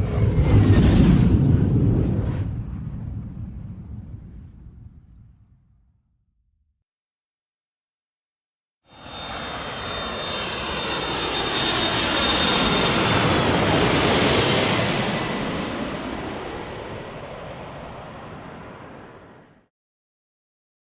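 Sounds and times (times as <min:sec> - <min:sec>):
airplane flying overhead: 0:00.0 - 0:03.5, 0:08.9 - 0:19.7.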